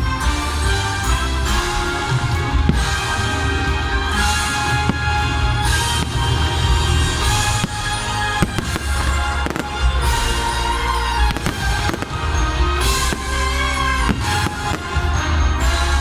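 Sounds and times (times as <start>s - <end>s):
fireworks bangs and crackles: 0.0s - 16.0s
loud show music: 0.0s - 16.0s.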